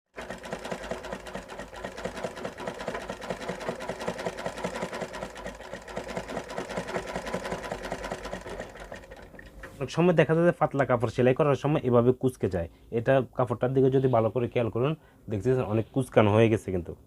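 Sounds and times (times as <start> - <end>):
sewing machine stitching: 0.1 - 9.8.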